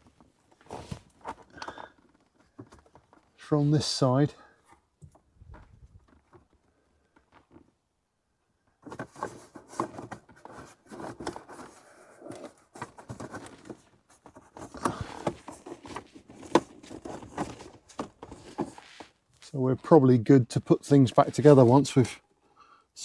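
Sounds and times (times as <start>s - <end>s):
rustling: 0.0s - 7.7s, 8.8s - 19.9s.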